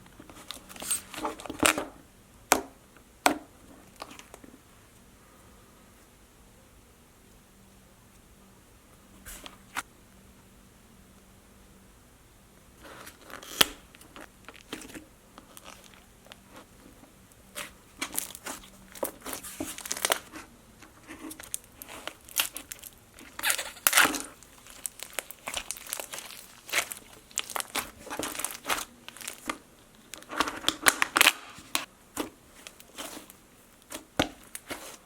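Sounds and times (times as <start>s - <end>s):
slime crinkling and crackling: 0.1s - 2.0s, 3.7s - 4.5s, 12.8s - 35.0s.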